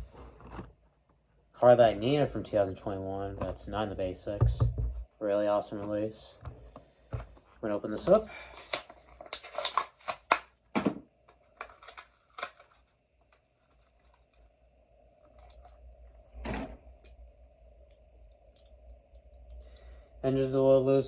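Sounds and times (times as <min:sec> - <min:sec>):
packaging rustling: 0:08.4 - 0:10.5, 0:11.3 - 0:14.6, 0:15.2 - 0:16.0
blister pack being torn open: 0:08.5 - 0:10.5, 0:11.5 - 0:14.4.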